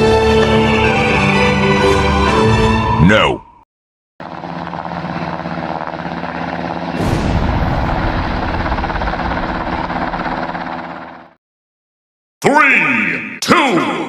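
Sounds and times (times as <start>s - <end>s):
heavy mechanical rumble: 4.2s - 11.4s.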